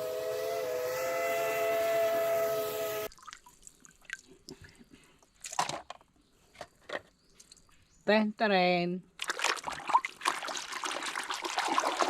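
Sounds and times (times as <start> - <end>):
water dripping: 3.1 - 4.8, 9.2 - 12.0
water splash: 9.2 - 12.0.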